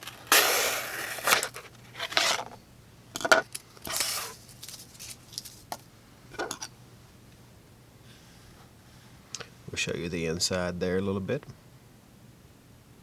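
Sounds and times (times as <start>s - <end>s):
knife slicing cardboard: 0.0s - 2.5s.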